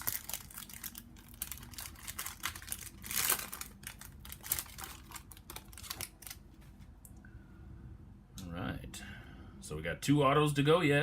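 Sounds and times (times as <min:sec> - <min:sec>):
foil wrapper crinkling: 0:00.0 - 0:06.7.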